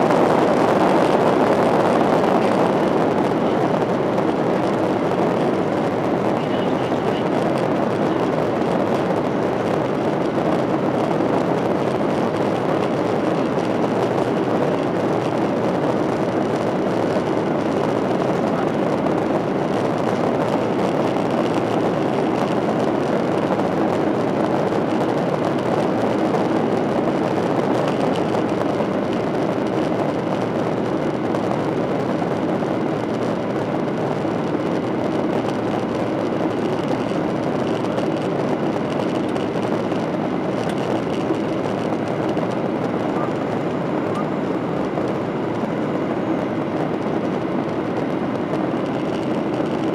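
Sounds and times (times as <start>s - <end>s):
jet engine and airflow rush: 0.0s - 49.9s.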